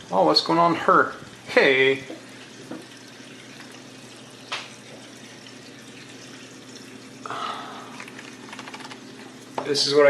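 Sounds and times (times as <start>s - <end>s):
water pump humming: 0.0s - 10.0s
water trickling and gurgling: 0.0s - 10.0s.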